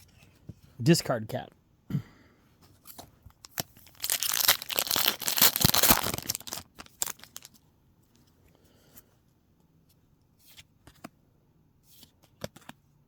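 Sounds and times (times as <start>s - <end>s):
foil wrapper crinkling and tearing: 3.4s - 7.6s.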